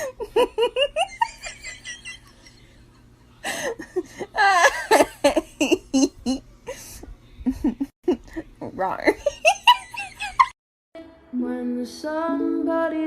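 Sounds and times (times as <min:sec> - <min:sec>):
high-pitched laughing: 0:00.0 - 0:02.5.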